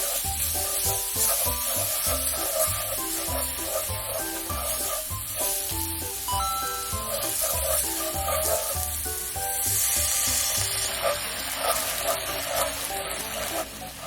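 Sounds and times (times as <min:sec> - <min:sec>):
food sizzling in a frying pan: 0:00.0 - 0:14.0.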